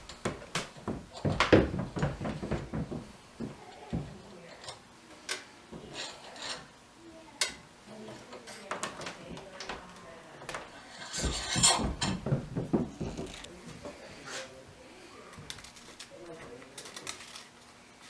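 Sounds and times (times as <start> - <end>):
rubbing and scraping: 10.7 - 13.5.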